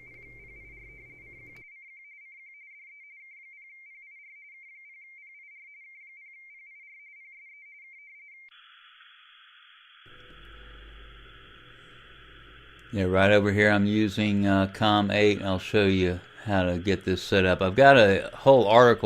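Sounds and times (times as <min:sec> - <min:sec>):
warbling radioteletype tone: 0:00.0 - 0:19.0
radio receiver hiss: 0:08.5 - 0:19.0.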